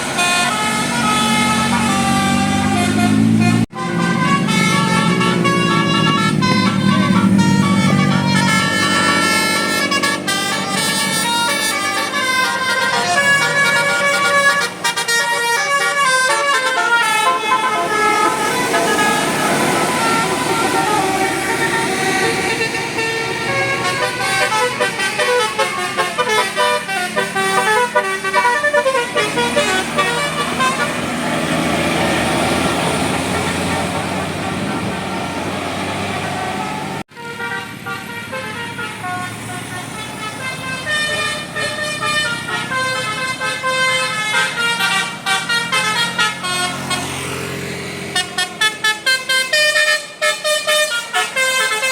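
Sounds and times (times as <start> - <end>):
bus horn playing a tune: 0.0 - 51.9.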